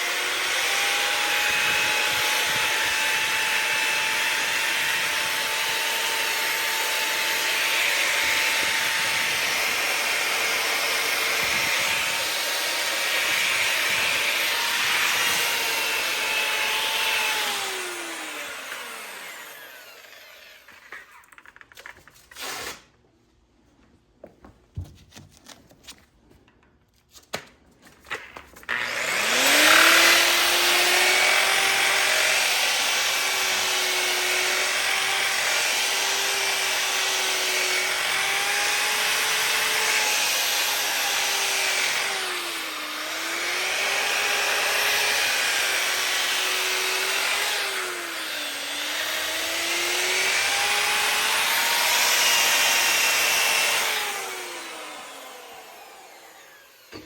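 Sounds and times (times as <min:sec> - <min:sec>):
grinder whining against metal: 0:00.0 - 0:21.9, 0:28.1 - 0:57.0.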